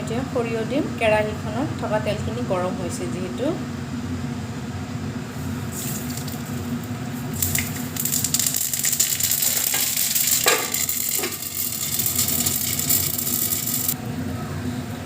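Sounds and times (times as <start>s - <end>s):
seeds crackling in hot oil: 5.3s - 14.0s.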